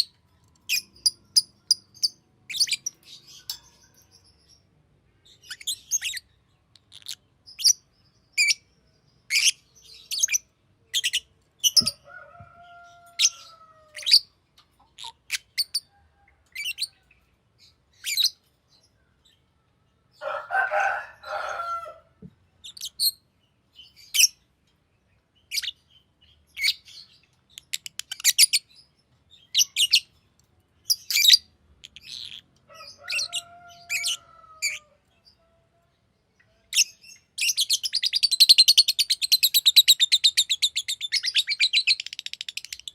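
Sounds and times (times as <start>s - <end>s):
lovebird chirping: 0.0s - 12.0s, 17.6s - 19.0s, 22.6s - 24.4s, 25.4s - 30.2s, 30.8s - 35.5s, 36.4s - 42.9s
bird chattering: 6.8s - 7.8s.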